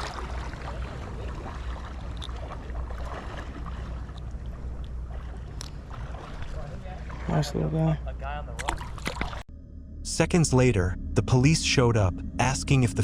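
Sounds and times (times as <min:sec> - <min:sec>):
creek water flowing: 0:00.0 - 0:07.9.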